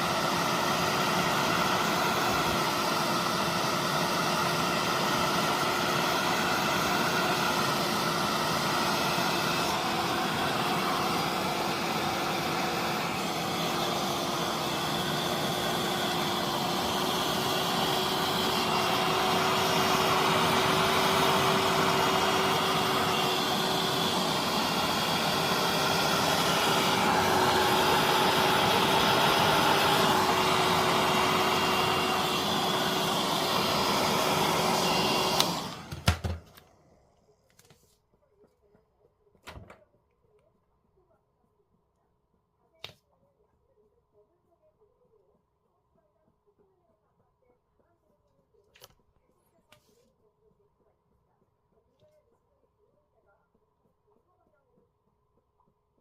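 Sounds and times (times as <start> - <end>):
hair dryer running: 0.0 - 37.3.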